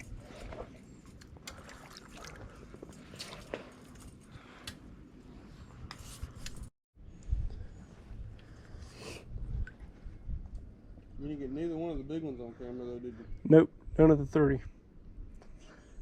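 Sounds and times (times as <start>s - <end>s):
water sloshing and splashing: 0.0s - 4.3s.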